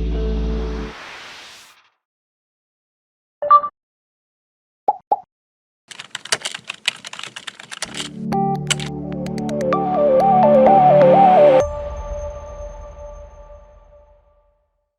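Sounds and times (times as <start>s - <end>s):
keyboard typing clicks: 5.9s - 9.6s
synthesizer music: 7.9s - 13.2s.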